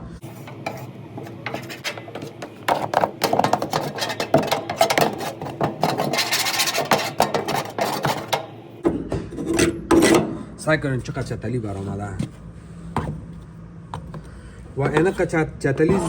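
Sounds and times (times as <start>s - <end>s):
scraping lint from dryer filter: 0.2s - 8.6s.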